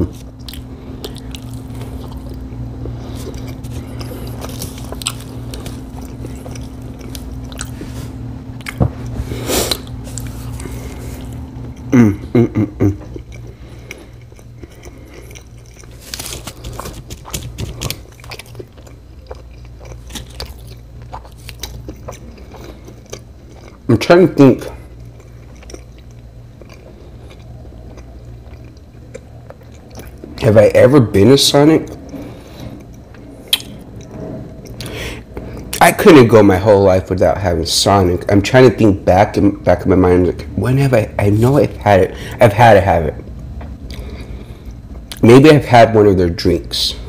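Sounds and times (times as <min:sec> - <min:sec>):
chewing and biting food: 0:00.0 - 0:23.9, 0:24.6 - 0:30.4, 0:31.8 - 0:35.8
steady low hum: 0:00.0 - 0:47.0.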